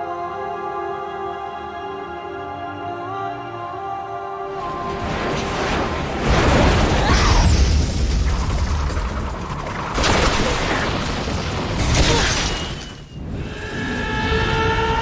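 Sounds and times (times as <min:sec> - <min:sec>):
heavy booms and crashes: 0:04.8 - 0:12.3.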